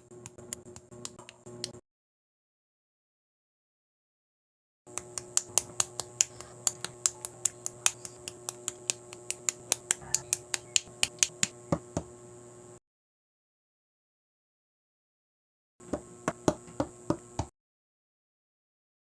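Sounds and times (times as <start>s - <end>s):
steady low hum: 0.0s - 1.8s, 4.9s - 12.8s, 15.8s - 17.5s.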